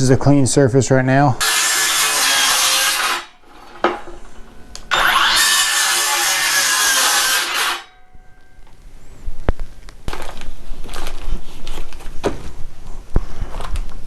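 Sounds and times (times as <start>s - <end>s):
circular saw cutting wood: 1.4s - 8.0s.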